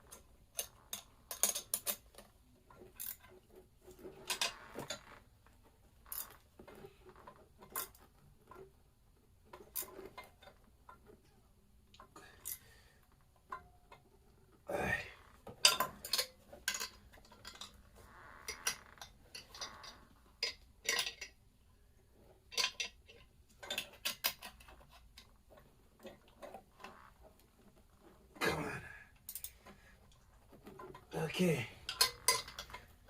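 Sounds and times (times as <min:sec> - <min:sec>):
metal tools clanking: 0:30.8 - 0:32.9.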